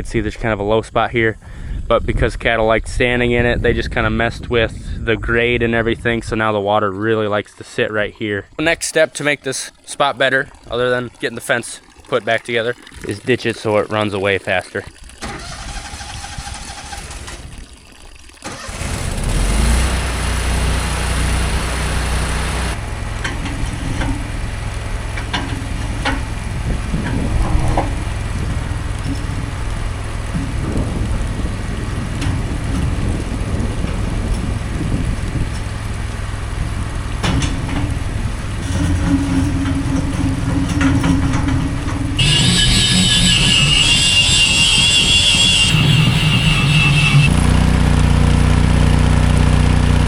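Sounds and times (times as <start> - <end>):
engine starting and running: 15.1 - 50.0.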